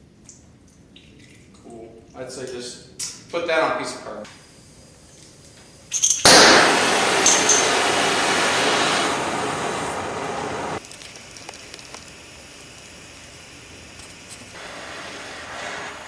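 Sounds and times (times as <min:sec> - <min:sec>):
gas torch flame hissing: 0:04.2 - 0:16.0.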